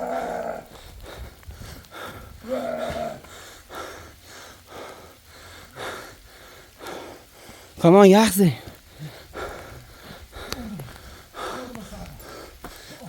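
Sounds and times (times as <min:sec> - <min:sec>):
person gasping for breath: 0:08.6 - 0:13.0.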